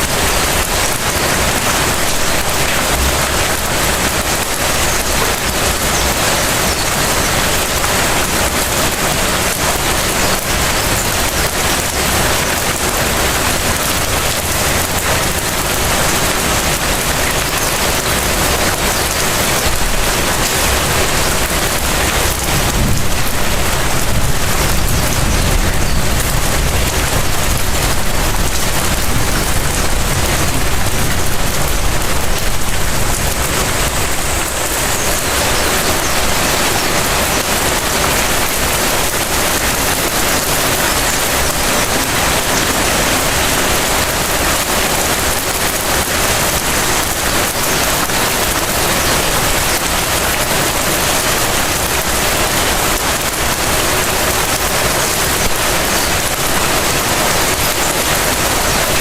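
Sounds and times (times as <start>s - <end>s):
light rain pattering: 0.0s - 59.0s
low rumble: 22.6s - 35.5s.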